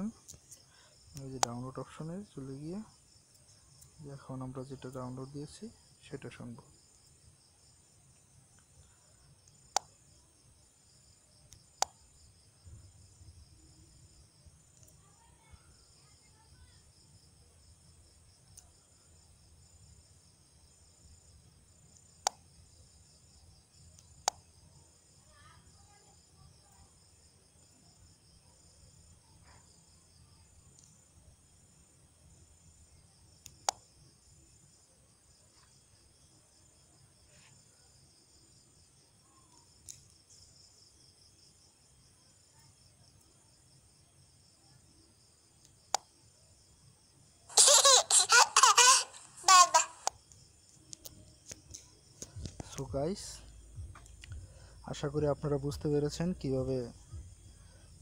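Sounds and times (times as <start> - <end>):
high-pitched electronic hiss: 51.8 - 58.0.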